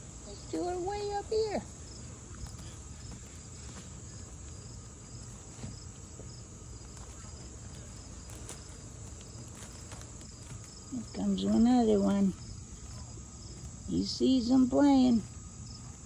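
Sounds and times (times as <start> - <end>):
insects chirping: 0.0 - 16.0
insects whining: 0.0 - 16.0.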